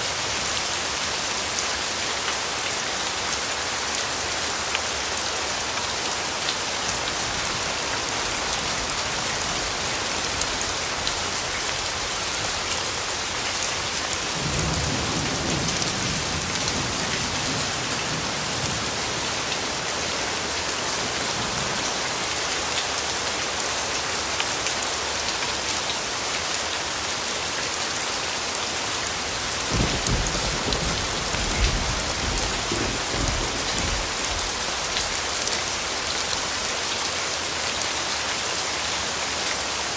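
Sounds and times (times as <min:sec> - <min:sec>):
steady rain: 0:00.0 - 0:39.9
low thunder rumbles: 0:14.4 - 0:18.9, 0:29.7 - 0:34.6.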